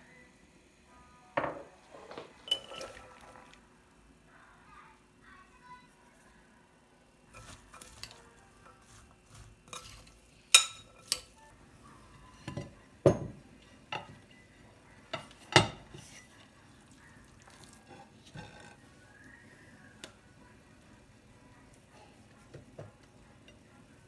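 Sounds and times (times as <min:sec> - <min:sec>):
dishes and utensils clinking: 0:01.4 - 0:03.6, 0:07.3 - 0:11.4, 0:12.2 - 0:16.5, 0:17.3 - 0:18.9.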